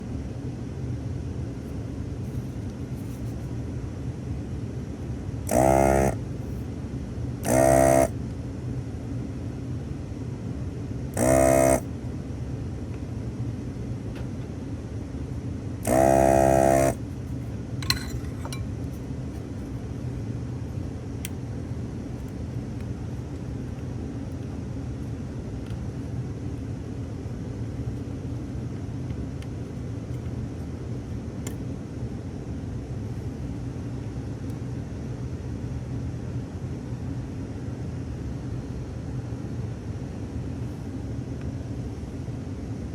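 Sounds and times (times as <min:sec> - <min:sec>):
steady low hum: 0:00.0 - 0:42.9
vacuum pump buzzing: 0:01.4 - 0:08.5, 0:11.0 - 0:12.1, 0:13.8 - 0:32.2.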